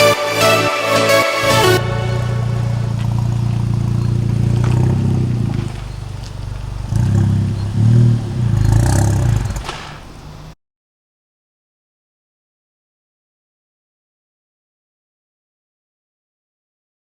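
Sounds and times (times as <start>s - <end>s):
car engine revving: 0.0s - 10.6s.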